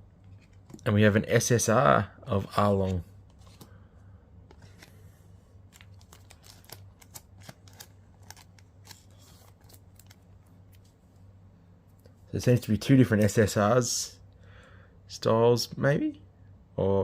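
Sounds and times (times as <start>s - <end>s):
trading cards rustling and ticking: 5.6s - 11.0s.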